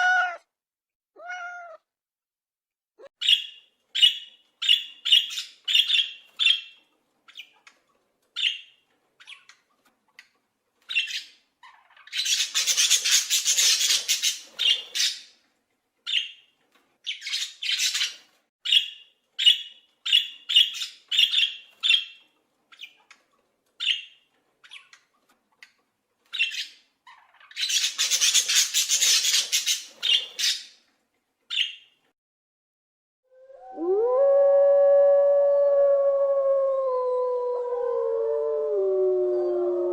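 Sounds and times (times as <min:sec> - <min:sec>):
animal squawking calls: 0:00.0 - 0:00.4, 0:01.2 - 0:01.8.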